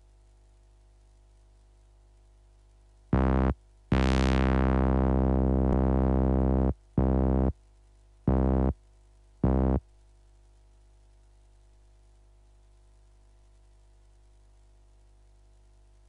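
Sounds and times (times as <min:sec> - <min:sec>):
buzzy synthesizer notes: 0:03.2 - 0:07.5, 0:08.3 - 0:08.8, 0:09.4 - 0:09.8.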